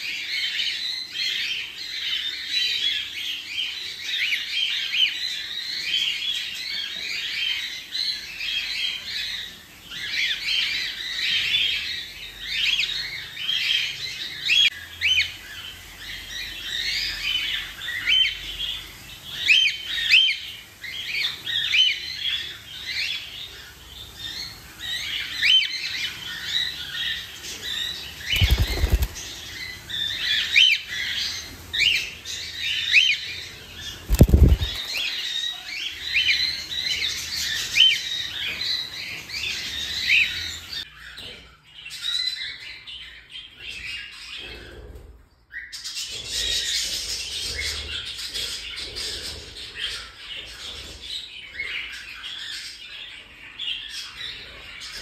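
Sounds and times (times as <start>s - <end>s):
baby cockatiels chirping: 0.1s - 44.8s.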